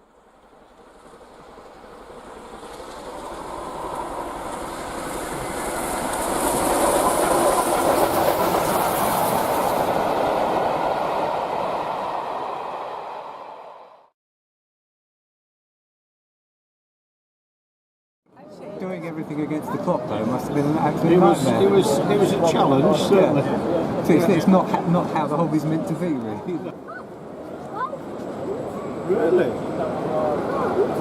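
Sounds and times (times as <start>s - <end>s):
train clickety-clack rattle: 0.6s - 10.6s.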